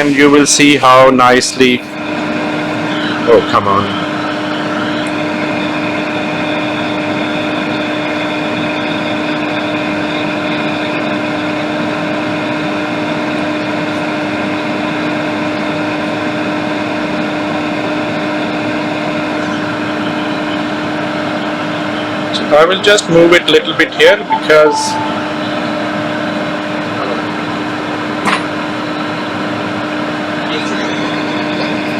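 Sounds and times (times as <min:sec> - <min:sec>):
mechanical hum: 0:00.0 - 0:15.7.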